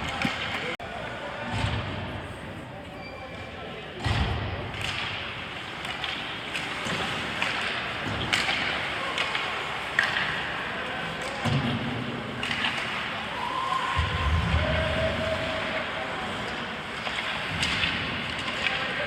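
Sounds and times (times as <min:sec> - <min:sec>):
hockey sticks and puck clacking: 0:00.0 - 0:00.8, 0:04.0 - 0:19.0
people shouting: 0:13.3 - 0:16.2.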